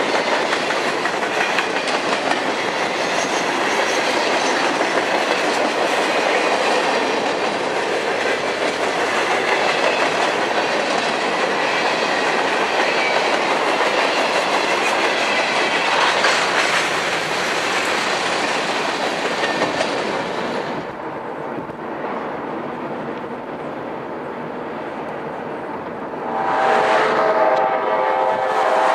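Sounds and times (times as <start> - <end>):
wheels clacking over rail joints: 0.0 - 22.2
train cars rolling past: 0.0 - 28.9.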